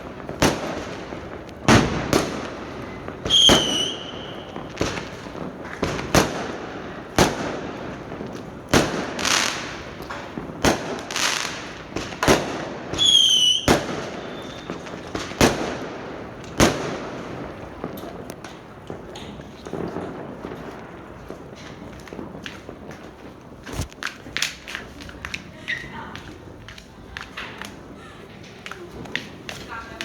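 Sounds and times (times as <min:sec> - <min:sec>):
fireworks banging: 0:00.0 - 0:30.0
firework whistle: 0:03.3 - 0:04.8, 0:13.0 - 0:14.9.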